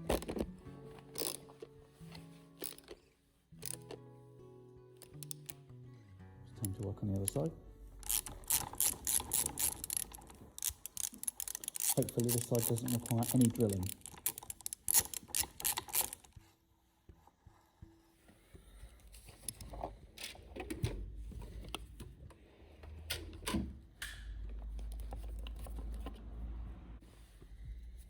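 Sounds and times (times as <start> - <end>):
tools clicking on handlebar controls: 0.0 - 1.8, 2.6 - 3.0, 3.6 - 4.0, 5.0 - 5.6, 6.6 - 16.4.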